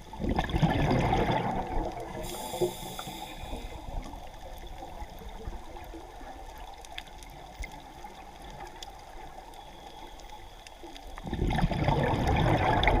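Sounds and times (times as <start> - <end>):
underwater rumble and hiss: 0.0 - 13.0
faint clicks: 1.8 - 11.3.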